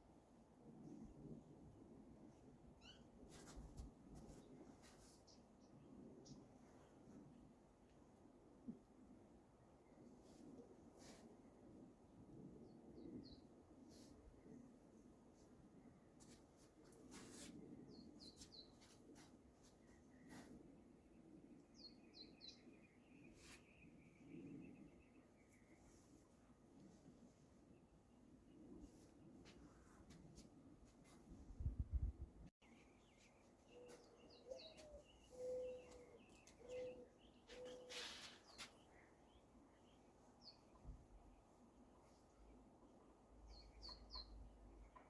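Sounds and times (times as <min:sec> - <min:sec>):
faint bird chirping: 0:02.6 - 0:07.2, 0:12.3 - 0:29.1, 0:31.0 - 0:45.0
dove cooing: 0:33.8 - 0:38.2
brief rustle: 0:37.5 - 0:38.8.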